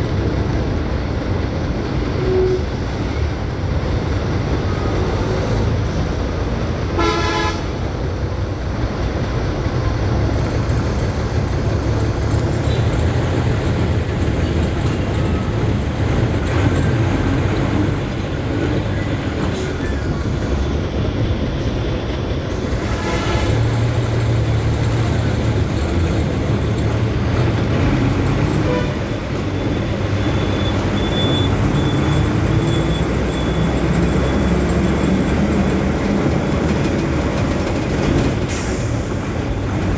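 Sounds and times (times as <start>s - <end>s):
road traffic engine rumble: 0.0s - 39.9s
vehicle horns tooting: 7.0s - 7.9s, 22.8s - 24.0s, 28.2s - 33.8s.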